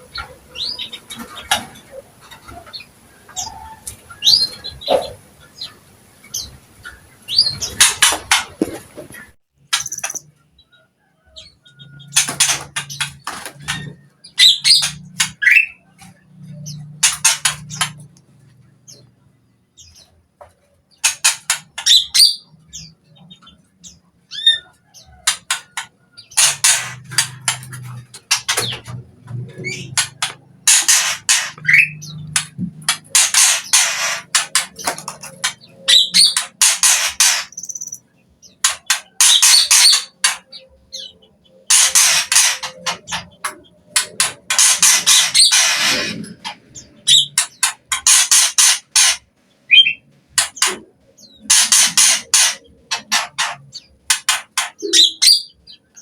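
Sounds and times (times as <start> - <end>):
bird rattling chatter and whistles: 29.6 - 38.0.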